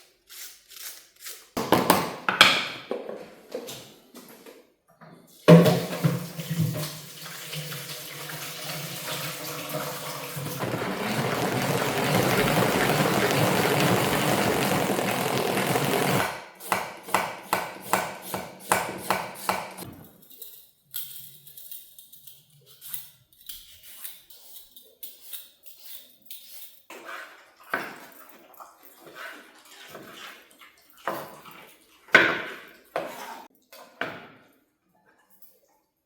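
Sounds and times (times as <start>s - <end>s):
water running from a tap: 6.0s - 16.2s.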